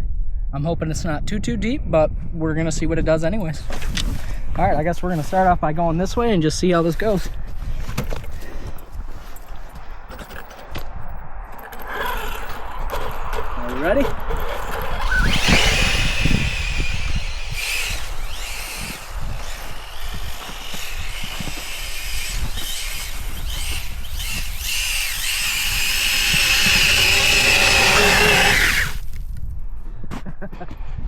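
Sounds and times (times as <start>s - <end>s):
electric motor whining: 11.9s - 29.0s.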